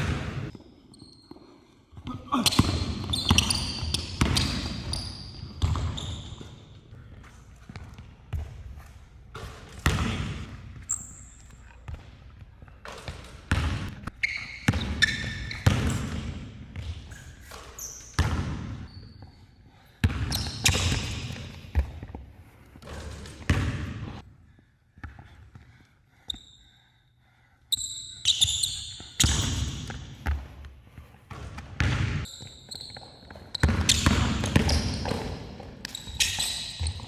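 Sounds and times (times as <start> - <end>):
shoe squeaks: 0.9 - 1.6, 2.4 - 6.7, 10.8 - 11.6, 14.0 - 16.2, 17.0 - 19.6, 20.2 - 21.4, 26.3 - 26.7, 27.7 - 30.0, 32.2 - 37.0
basketball bouncing on court: 2.0 - 6.7, 7.6 - 11.2, 11.9 - 19.3, 20.0 - 22.2, 22.8 - 24.2, 28.3 - 30.7, 31.3 - 37.0.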